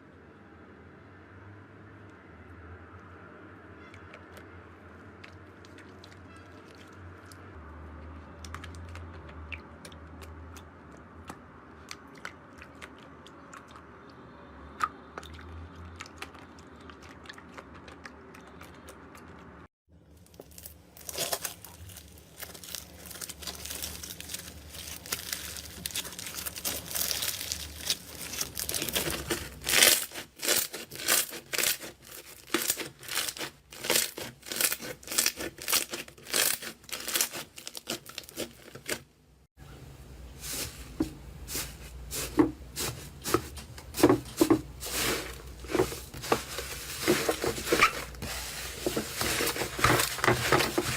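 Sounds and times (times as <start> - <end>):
slime crackling: 16.1 - 39.0, 41.5 - 50.9
crunchy slime squeezes: 20.1 - 39.0.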